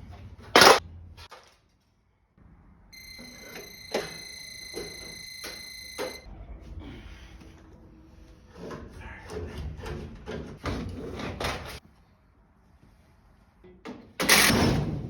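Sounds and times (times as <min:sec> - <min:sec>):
high-pitched electronic tone: 0:03.0 - 0:06.3.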